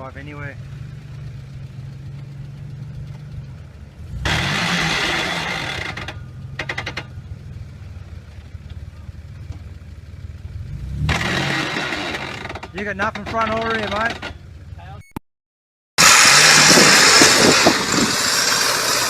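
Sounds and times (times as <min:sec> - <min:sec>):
truck engine idling and revving: 0:00.0 - 0:15.0, 0:16.0 - 0:19.0.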